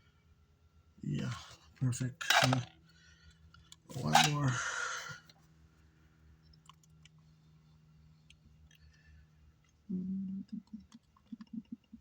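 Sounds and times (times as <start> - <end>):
low electrical hum: 0.0 - 12.0
person humming: 9.9 - 11.8.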